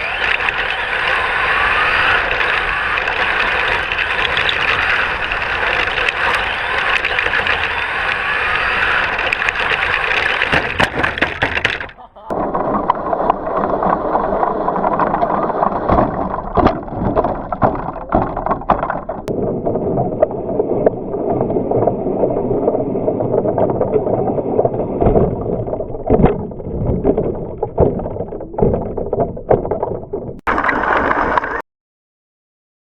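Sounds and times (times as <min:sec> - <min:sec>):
rc car rumble: 0:00.0 - 0:16.4
knocks and rattles of car body: 0:10.6 - 0:12.0.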